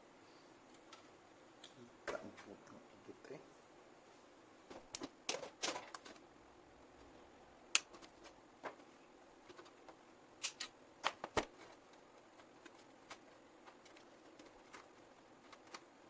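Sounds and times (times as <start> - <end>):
plastic parts clicking: 4.8 - 6.2, 9.4 - 15.9
cables rustling: 7.8 - 16.0.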